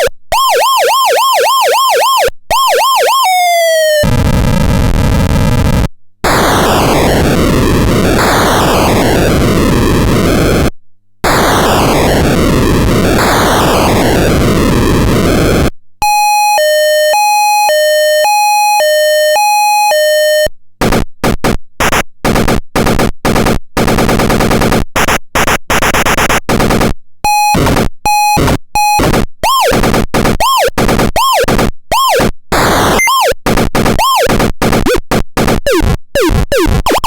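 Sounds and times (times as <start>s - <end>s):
two-tone electronic siren: 0.0s - 4.2s, 11.3s - 20.5s, 27.3s - 35.0s, 35.6s - 37.0s
rapid buzzy pulses: 20.8s - 37.0s
wobbling electronic sweep: 30.4s - 33.4s, 34.0s - 35.0s, 35.6s - 37.0s.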